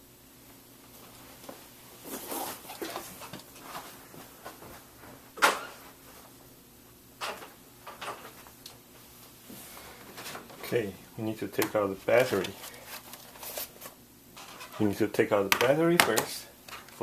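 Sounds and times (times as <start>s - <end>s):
rustling and scraping on laptop: 0.9s - 6.4s, 12.1s - 15.0s.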